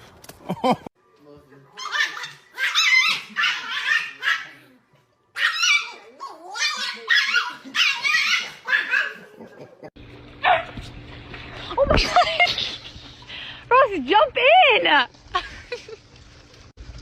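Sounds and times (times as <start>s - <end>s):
dog yapping: 1.8s - 4.6s, 5.4s - 9.2s, 10.4s - 10.8s.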